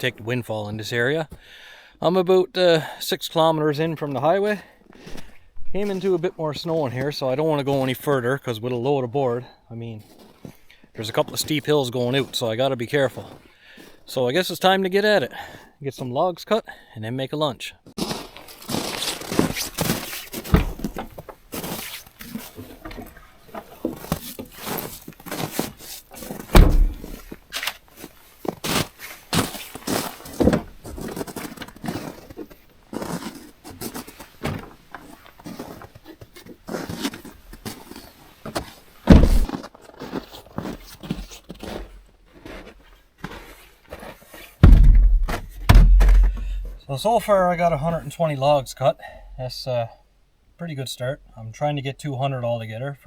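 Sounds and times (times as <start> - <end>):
heavy thumps: 19.8 - 21.7, 26.4 - 27.4, 39.1 - 39.5, 44.6 - 46.8
wood knocking and snapping: 19.8 - 21.8, 26.4 - 27.4, 39.1 - 39.6, 44.6 - 46.8.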